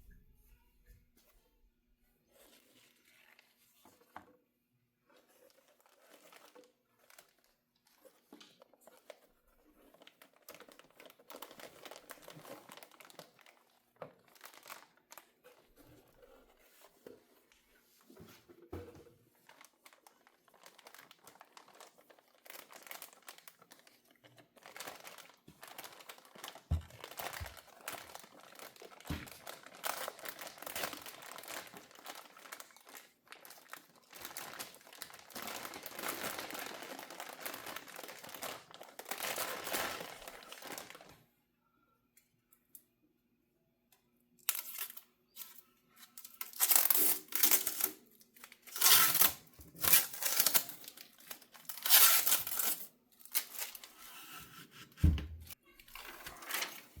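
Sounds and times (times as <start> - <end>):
packaging crinkling and tearing: 5.4 - 9.2, 9.8 - 15.8, 19.4 - 41.1, 44.4 - 54.1, 55.9 - 57.0.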